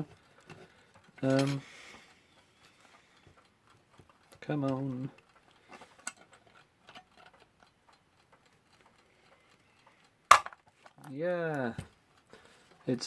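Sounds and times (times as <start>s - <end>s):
alarm clock ticking: 0.0s - 10.3s.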